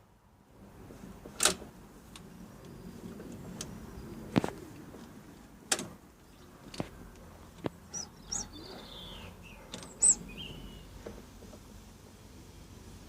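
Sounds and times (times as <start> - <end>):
bird chirping: 2.4 - 4.3, 7.7 - 11.0.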